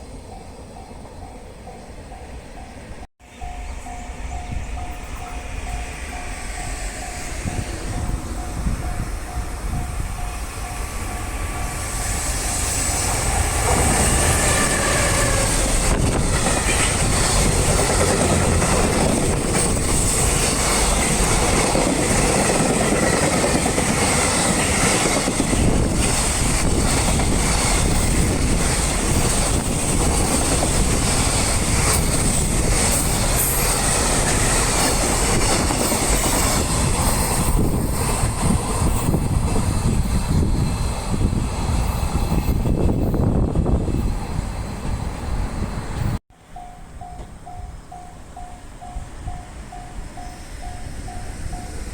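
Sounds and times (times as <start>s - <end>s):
freight train wheels rumbling on rails: 0.0s - 51.9s.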